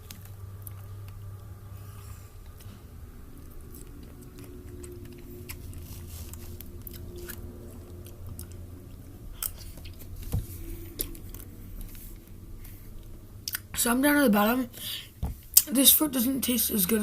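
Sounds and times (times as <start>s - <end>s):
chewing and mouth sounds: 0.0s - 12.4s, 13.4s - 13.7s
low steady hum: 0.0s - 17.0s.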